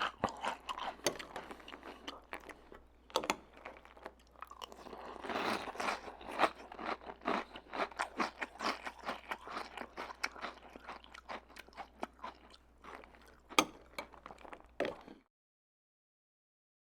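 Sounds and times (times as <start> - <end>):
person chewing crunchy cereal: 0.0 - 15.3.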